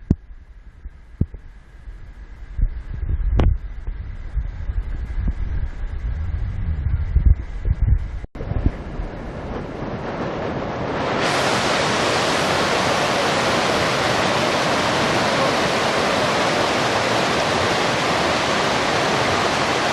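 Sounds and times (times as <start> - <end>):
wind buffets on microphone: 0.0 - 19.9
stream rushing over rocks: 9.8 - 19.9.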